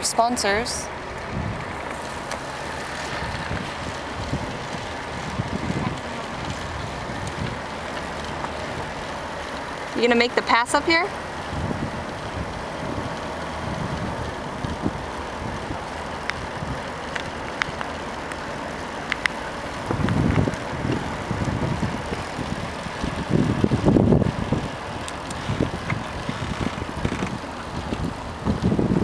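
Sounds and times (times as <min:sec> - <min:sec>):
vehicle and road noise: 0:00.0 - 0:29.0
wind buffeting microphone: 0:00.0 - 0:29.0.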